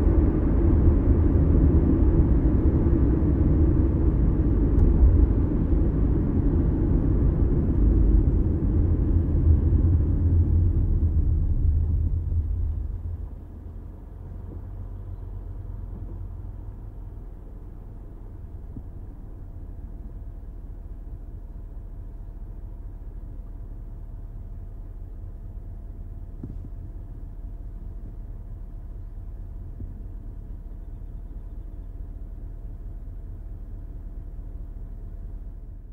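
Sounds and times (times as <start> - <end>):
car engine idling: 0.0 - 35.9
road and engine noise: 0.0 - 35.9.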